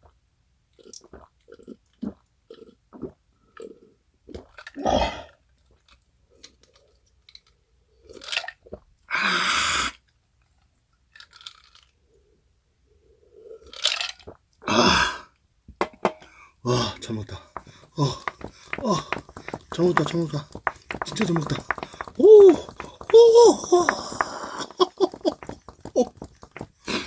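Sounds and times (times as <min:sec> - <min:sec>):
person chewing: 0:16.8 - 0:27.0.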